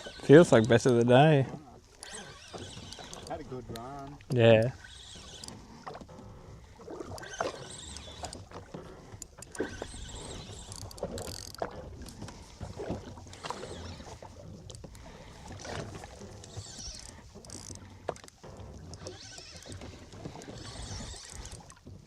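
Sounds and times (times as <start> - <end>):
water slapping against boat hull: 6.8 - 22.0.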